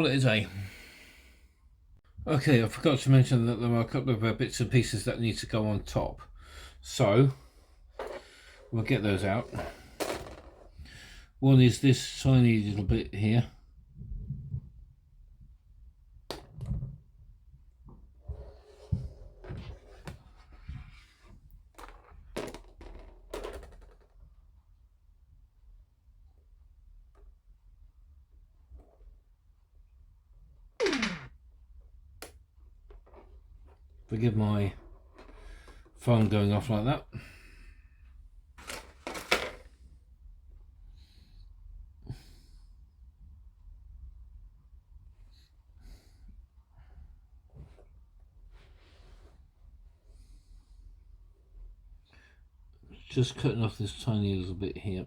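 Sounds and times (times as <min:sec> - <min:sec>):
plastic parts clattering: 0:38.6 - 0:39.8.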